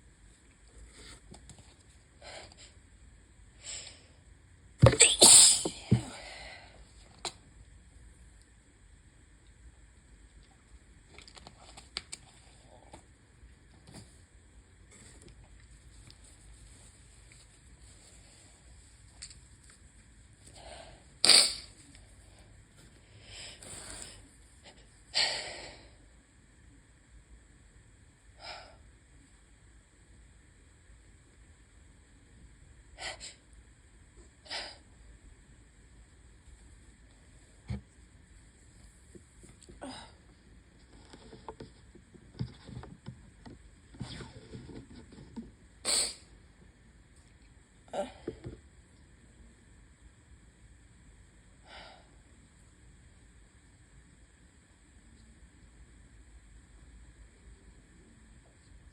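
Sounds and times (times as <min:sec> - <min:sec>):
person sneezing: 0:04.8 - 0:06.2, 0:21.2 - 0:21.7, 0:45.9 - 0:46.3.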